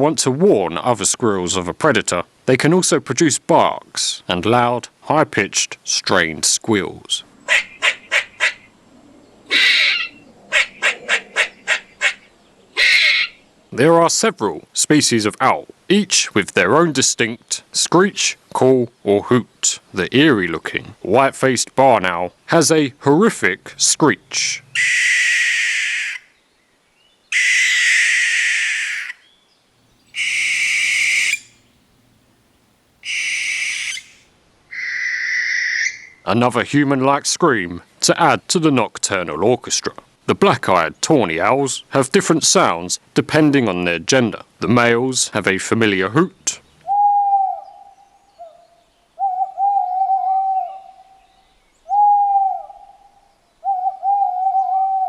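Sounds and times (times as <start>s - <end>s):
barn owl screeching: 7.4s - 8.7s, 9.4s - 13.5s, 24.7s - 26.3s, 27.3s - 29.3s, 30.0s - 31.8s, 33.0s - 36.3s, 46.9s - 51.3s, 51.9s - 55.0s.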